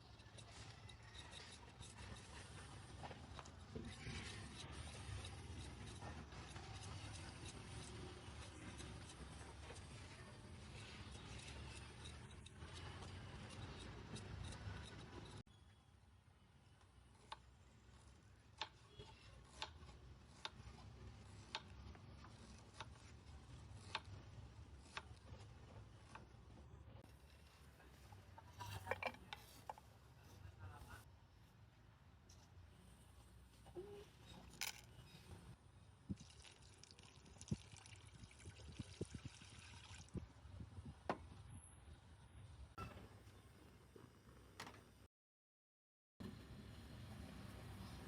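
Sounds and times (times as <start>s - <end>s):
liquid pouring in thin stream: 36.1s - 40.2s.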